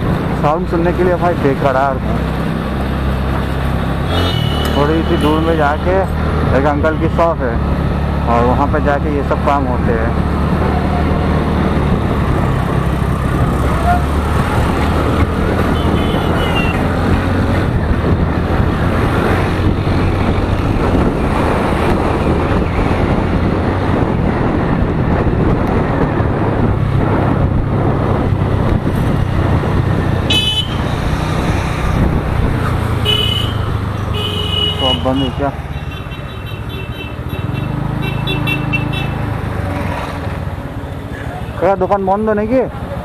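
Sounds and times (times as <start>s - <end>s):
scooter engine and road rumble: 0.0s - 43.0s
horn tooting: 4.1s - 5.8s, 13.7s - 14.2s, 15.7s - 16.9s, 30.3s - 30.9s, 33.0s - 39.3s.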